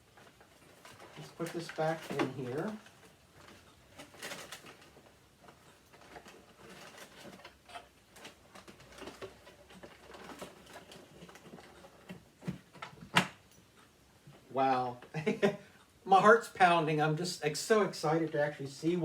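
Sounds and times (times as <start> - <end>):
vacuum parts clicking and knocking: 0.0 - 13.6.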